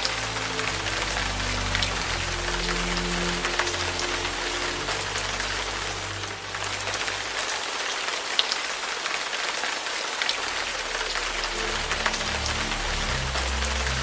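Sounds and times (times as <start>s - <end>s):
steady rain hiss: 0.0s - 14.0s.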